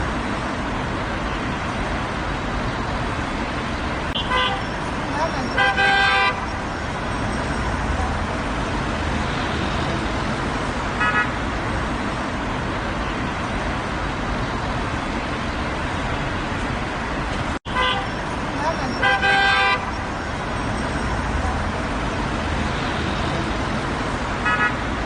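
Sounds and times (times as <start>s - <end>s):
rumble and hiss of passing vehicles: 0.0s - 25.0s
car horn toot: 4.2s - 4.7s, 5.4s - 6.5s, 17.7s - 18.2s, 18.9s - 20.0s, 24.4s - 24.8s.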